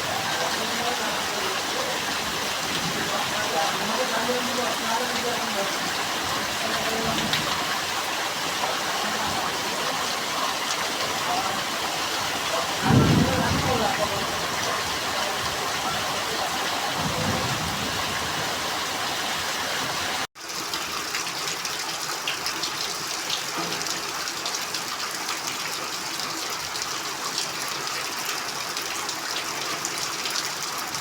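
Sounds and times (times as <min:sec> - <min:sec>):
gushing water: 0:00.0 - 0:31.0
heavy rain pouring: 0:00.0 - 0:31.0.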